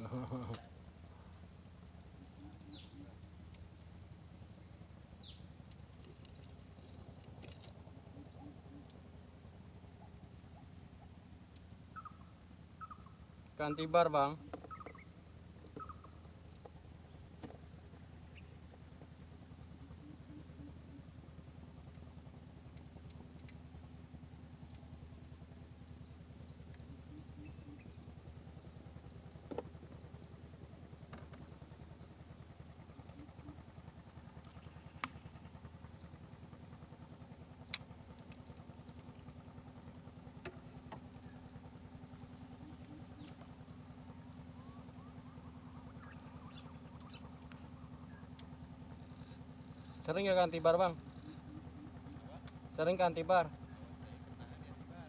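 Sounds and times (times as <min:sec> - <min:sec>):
high-pitched insect drone: 0:00.0 - 0:55.0
low motor-like hum: 0:00.0 - 0:55.0.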